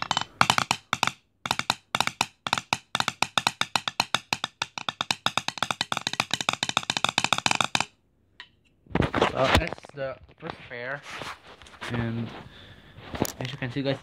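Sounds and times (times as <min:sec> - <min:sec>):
drumsticks tapping: 0:00.0 - 0:08.7.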